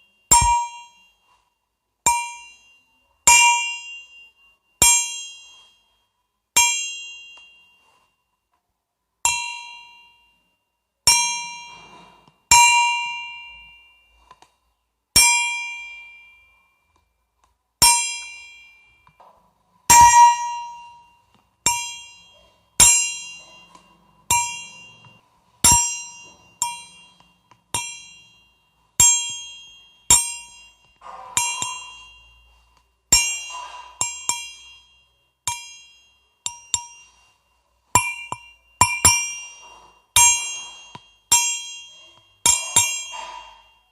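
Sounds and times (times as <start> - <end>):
bell struck and ringing: 0.0 - 1.4, 17.8 - 43.9.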